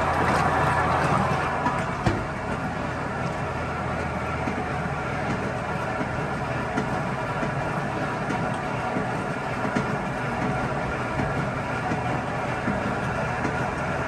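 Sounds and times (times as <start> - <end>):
rough mechanical noise: 0.0 - 4.1
washing machine humming: 0.0 - 14.0.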